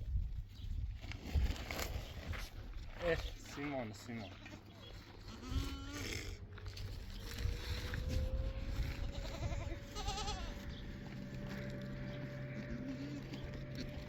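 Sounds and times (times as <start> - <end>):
livestock bleating: 4.2 - 6.4, 9.0 - 13.9
low rumbling: 5.2 - 14.0.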